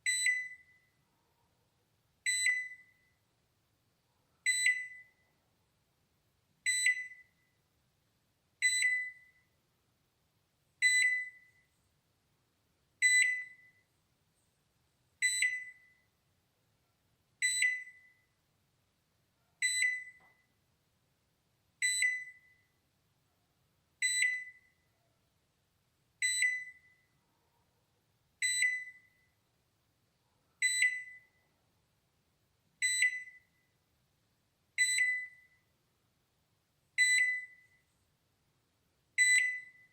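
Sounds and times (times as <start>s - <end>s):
microwave alarm beeping: 0.0s - 1.0s, 2.2s - 3.2s, 4.4s - 5.2s, 6.6s - 7.5s, 8.6s - 9.5s, 10.8s - 11.7s, 13.0s - 13.9s, 15.2s - 16.1s, 17.4s - 18.3s, 19.6s - 20.5s, 21.8s - 22.7s, 24.0s - 24.8s, 26.2s - 27.1s, 28.4s - 29.4s, 30.6s - 31.4s, 32.8s - 33.7s, 34.8s - 35.7s, 37.0s - 37.8s, 39.2s - 39.9s.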